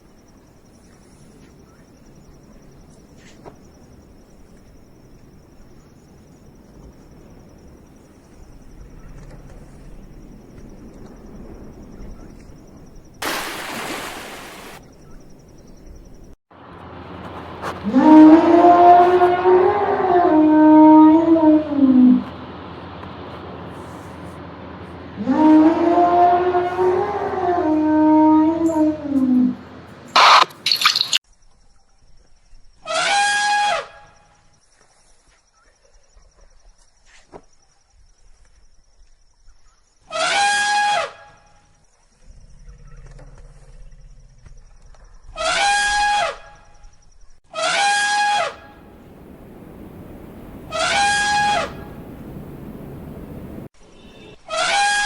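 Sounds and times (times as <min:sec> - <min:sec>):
loud hiss: 0:13.2 - 0:14.8
elephant trumpeting: 0:47.6 - 0:55.0
long animal call: 0:47.6 - 0:55.0.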